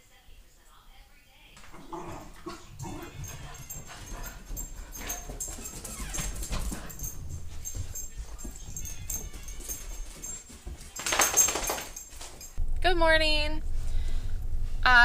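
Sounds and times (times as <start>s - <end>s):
dog whimpering: 1.7s - 10.5s.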